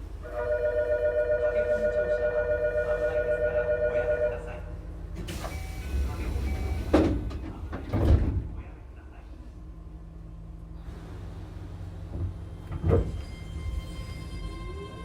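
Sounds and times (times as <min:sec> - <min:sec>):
electric train rumbling: 0:00.0 - 0:15.0
train doors closing thuds: 0:05.2 - 0:08.6, 0:12.1 - 0:13.4.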